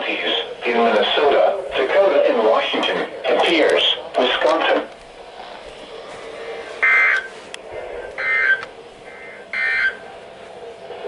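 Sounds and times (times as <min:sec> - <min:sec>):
faint radio hiss: 0:00.0 - 0:11.0
two-tone warble data signal: 0:06.8 - 0:07.3, 0:08.2 - 0:10.0.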